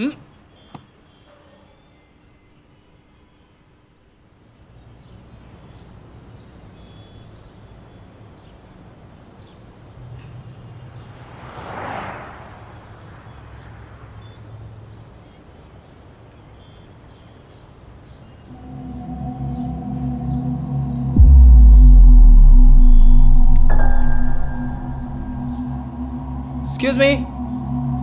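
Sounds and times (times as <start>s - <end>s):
low steady rumble: 18.5s - 28.0s
whoosh of something passing: 18.5s - 28.0s.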